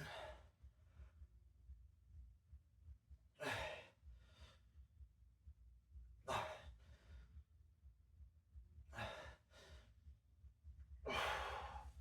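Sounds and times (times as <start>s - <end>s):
person breathing hard: 11.0s - 12.0s.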